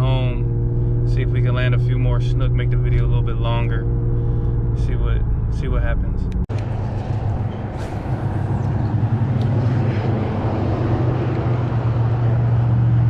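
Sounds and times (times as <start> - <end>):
low motor hum: 0.0 - 13.0
even rushing noise: 6.5 - 12.4.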